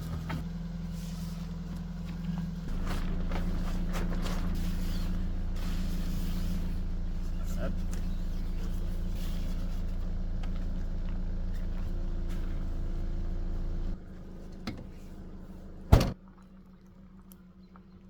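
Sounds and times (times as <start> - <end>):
vehicle engine idling: 0.0 - 18.0
car door slamming: 15.9 - 16.2.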